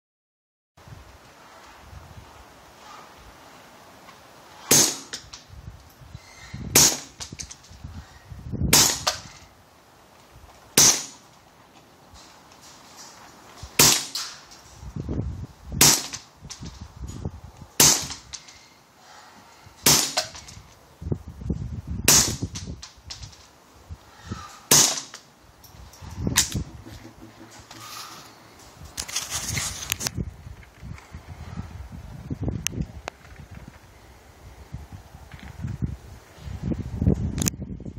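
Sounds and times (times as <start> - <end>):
suppressed pistol shots: 4.7 - 5.3.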